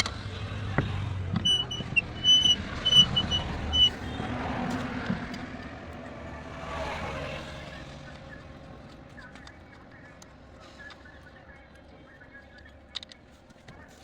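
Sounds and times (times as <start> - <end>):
traffic passing: 0.0 - 14.0
short high-pitched beeps: 1.4 - 4.0.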